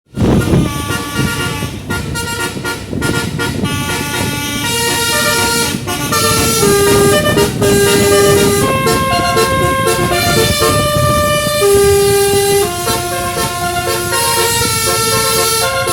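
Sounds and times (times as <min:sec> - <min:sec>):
musical bus horn melody: 0:00.1 - 0:15.9.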